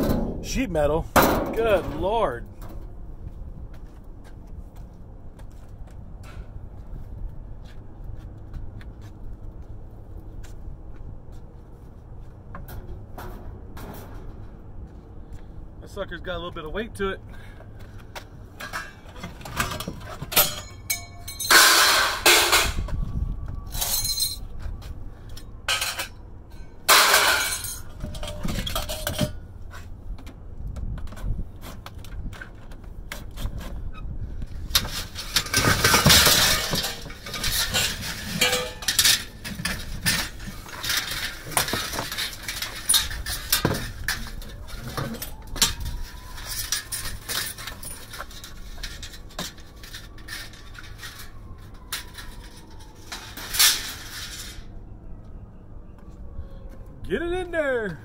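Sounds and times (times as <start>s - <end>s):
scrap metal clanking: 18.6s - 22.9s, 25.6s - 29.9s, 34.6s - 54.7s
heavy metal crashes: 19.6s - 22.9s, 34.9s - 44.0s.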